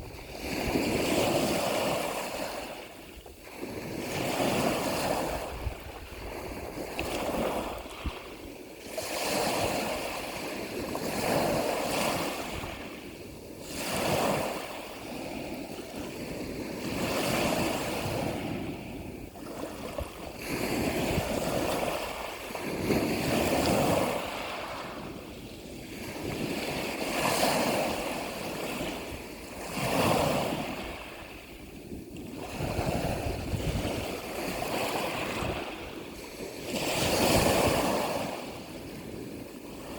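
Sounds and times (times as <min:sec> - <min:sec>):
ocean waves breaking: 0:00.0 - 0:39.9.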